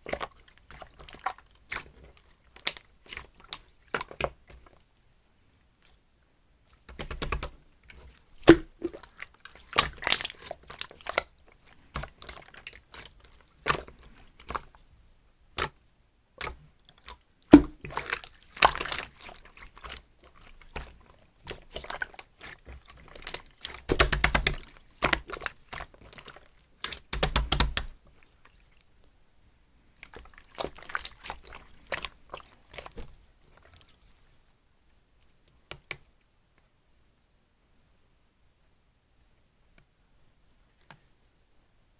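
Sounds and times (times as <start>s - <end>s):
slime being squished by hand: 6.8s - 14.7s, 16.4s - 28.7s, 30.0s - 34.0s.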